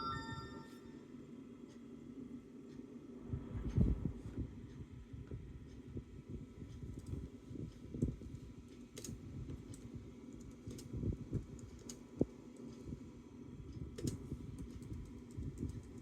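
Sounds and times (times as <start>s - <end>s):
low background rumble: 1.4s - 16.0s.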